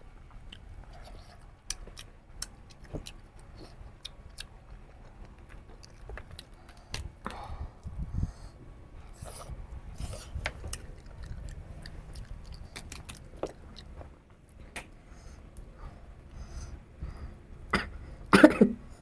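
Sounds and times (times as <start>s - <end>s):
low background hum: 0.0s - 19.0s
close chewing of meat: 0.4s - 8.0s, 9.0s - 14.9s
mouth clicks and smacks: 14.7s - 15.0s.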